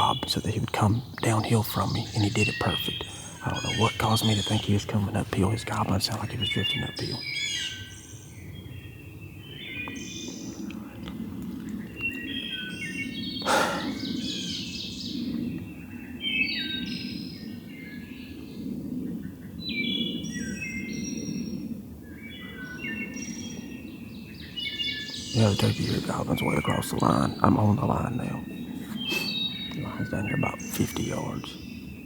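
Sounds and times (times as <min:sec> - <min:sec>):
low background rush: 0:00.0 - 0:17.7, 0:25.0 - 0:32.0
songbirds singing: 0:00.0 - 0:32.0.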